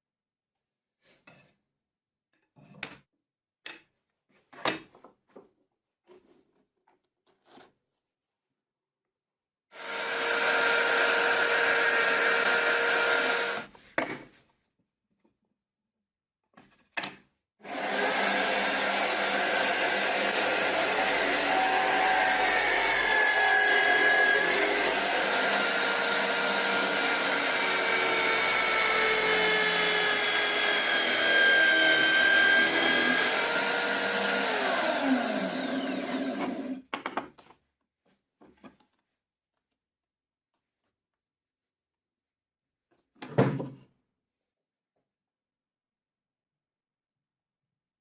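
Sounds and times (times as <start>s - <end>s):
electric power tool running: 9.8s - 13.7s, 17.6s - 36.8s.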